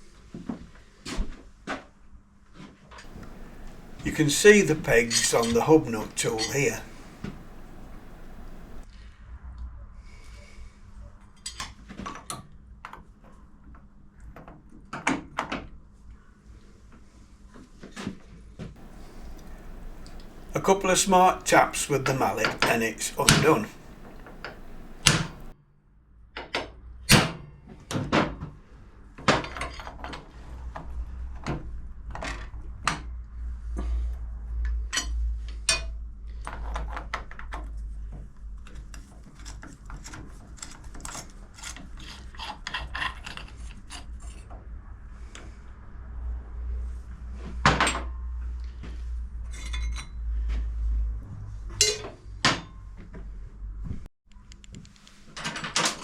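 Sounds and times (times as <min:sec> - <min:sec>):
steady low hum: 0:03.1 - 0:08.8, 0:18.8 - 0:25.5.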